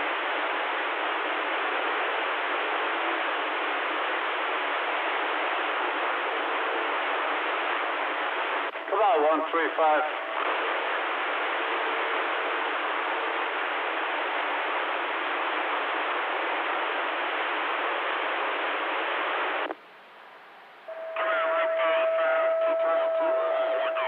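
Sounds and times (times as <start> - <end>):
radio static hiss: 0.0 - 24.0
garbled radio speech: 8.9 - 10.2, 21.2 - 24.0.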